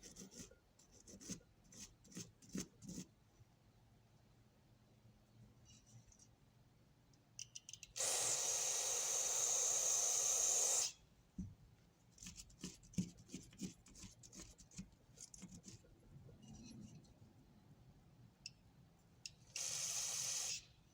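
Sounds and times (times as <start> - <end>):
spray hiss: 8.0 - 11.0, 19.6 - 20.7.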